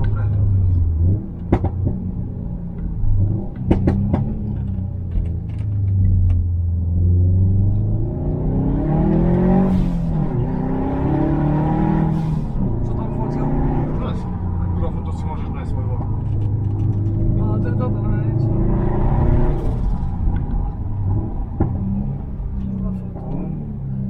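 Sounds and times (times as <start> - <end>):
exhaust cracks: 0.0 - 6.8, 11.7 - 24.0
car engine accelerating: 0.0 - 24.0.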